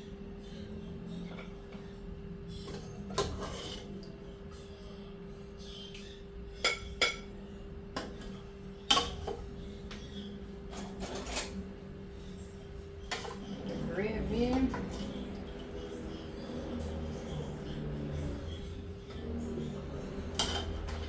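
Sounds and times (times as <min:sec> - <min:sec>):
dishes and cutlery clinking: 0:02.5 - 0:04.0, 0:06.6 - 0:07.3, 0:08.0 - 0:13.9, 0:20.1 - 0:21.0
dish scraping: 0:02.7 - 0:03.9, 0:20.0 - 0:21.0.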